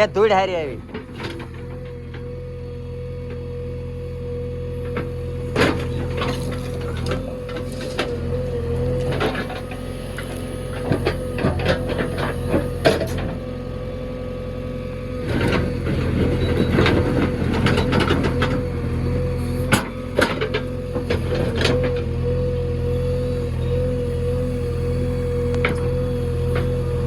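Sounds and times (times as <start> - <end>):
diesel engine under load: 0.0 - 27.0.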